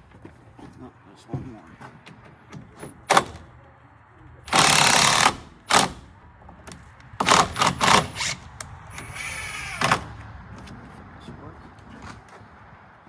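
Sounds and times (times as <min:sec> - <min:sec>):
power driver driving a screw: 0:04.5 - 0:06.1, 0:07.2 - 0:10.1.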